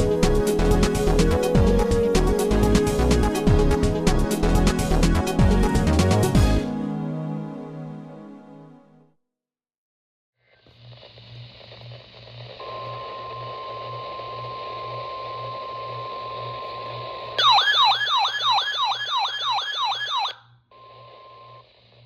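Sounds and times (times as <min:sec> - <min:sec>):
siren-like alarm falling sweeps: 0:17.4 - 0:20.4
steady single-pitch alert tone: 0:17.4 - 0:20.4.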